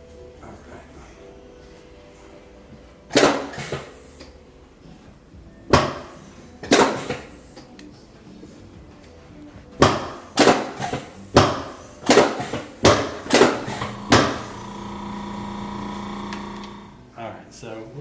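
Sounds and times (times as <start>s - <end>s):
steady electric hum: 12.8s - 17.2s.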